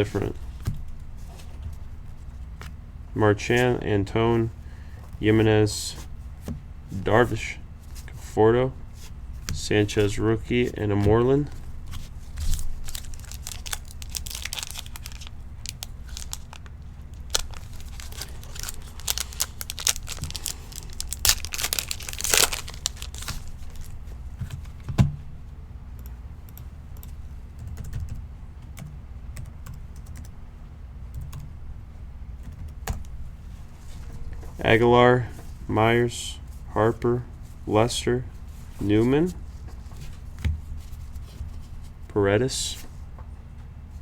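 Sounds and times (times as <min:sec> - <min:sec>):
card wrappers crinkling and tearing: 0:11.9 - 0:24.1.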